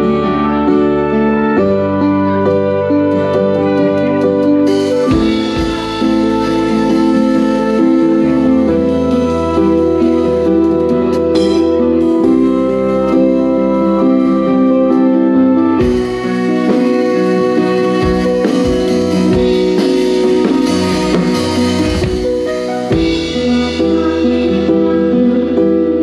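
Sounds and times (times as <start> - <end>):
held chords: 0.0 - 26.0
drum beat: 4.8 - 8.9, 15.8 - 24.2.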